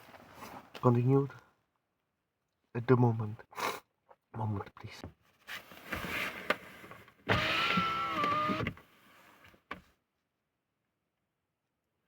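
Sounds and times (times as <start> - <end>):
power window motor whine: 7.3 - 8.8.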